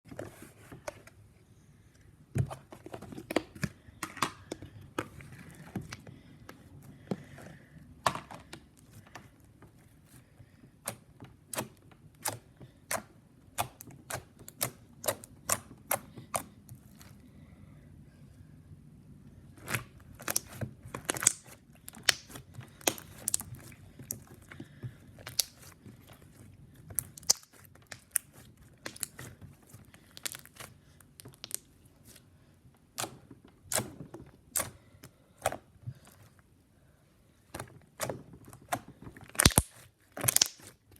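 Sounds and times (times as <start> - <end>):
slime clicking and popping: 19.7 - 23.5, 25.2 - 25.7, 27.0 - 29.2, 30.2 - 31.7, 38.7 - 40.8.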